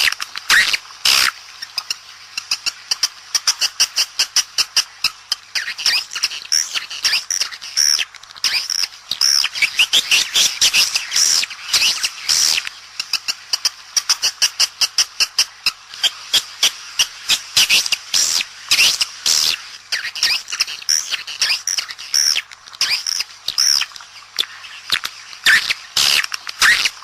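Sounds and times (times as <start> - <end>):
swiftlet calls: 17.3 - 23.9.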